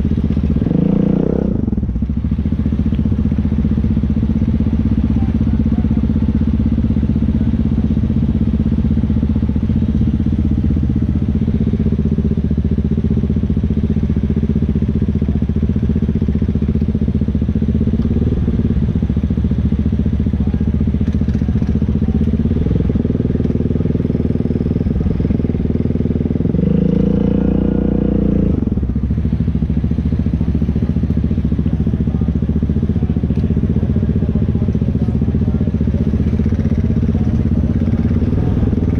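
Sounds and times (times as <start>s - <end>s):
engine revving: 0.0s - 2.0s, 21.0s - 30.9s, 31.6s - 38.9s
atv engine running: 0.0s - 38.9s.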